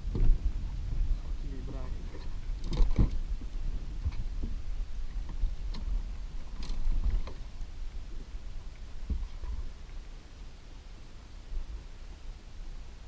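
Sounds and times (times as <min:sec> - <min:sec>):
knocks and bumps in a boat: 0:00.0 - 0:07.6, 0:09.0 - 0:09.7
steady low rumble: 0:00.0 - 0:13.0.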